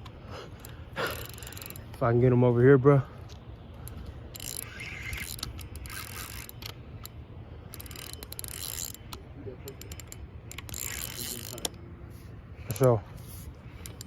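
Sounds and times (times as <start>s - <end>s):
steady low hum: 0.0s - 14.0s
fishing reel clicking and whirring: 0.6s - 2.0s, 3.8s - 11.8s, 12.7s - 14.0s.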